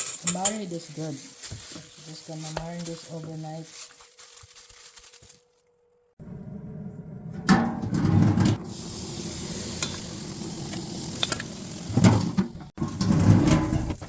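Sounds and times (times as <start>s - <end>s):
crackling and handling noise: 0.0s - 6.1s
chicken sizzling on a grill: 8.6s - 12.4s.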